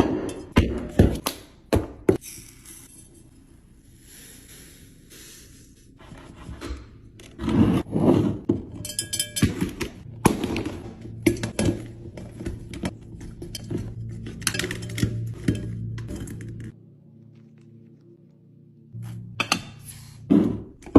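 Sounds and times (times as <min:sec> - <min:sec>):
containers knocking and clinking: 0:08.5 - 0:16.8
ringing clink: 0:08.8 - 0:09.6.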